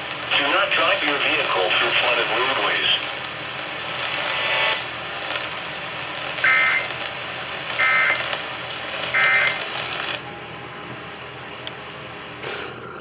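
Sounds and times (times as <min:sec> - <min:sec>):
radio hiss: 0:00.0 - 0:10.2.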